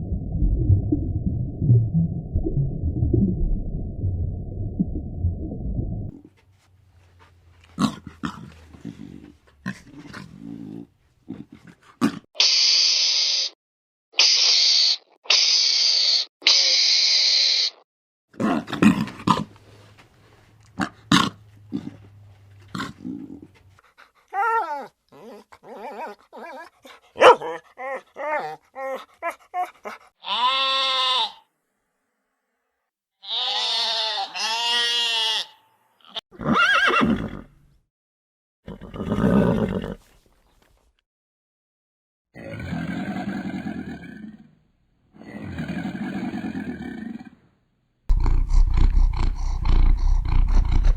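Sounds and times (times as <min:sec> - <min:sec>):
animal clicks and grunts: 0:48.1 - 0:50.9
animal pitched calls: 0:48.1 - 0:50.9.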